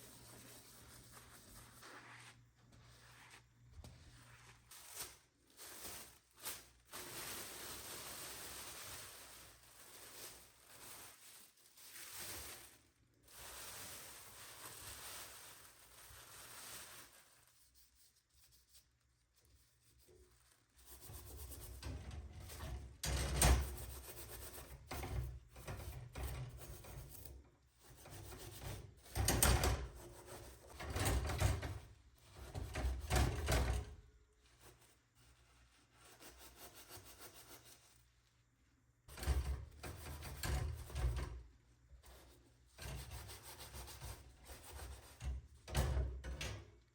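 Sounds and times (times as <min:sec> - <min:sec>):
scrubbing rubbing strokes: 0:00.0 - 0:06.2.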